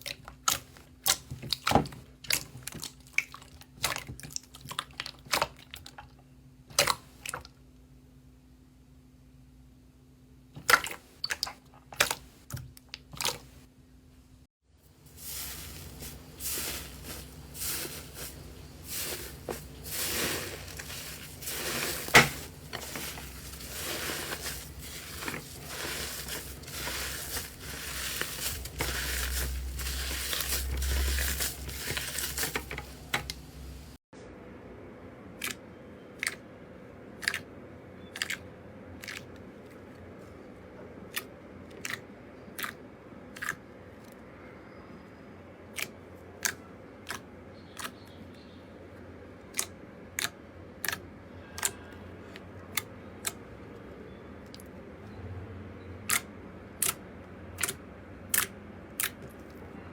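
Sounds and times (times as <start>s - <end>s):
slime crackling: 15.0s - 33.2s.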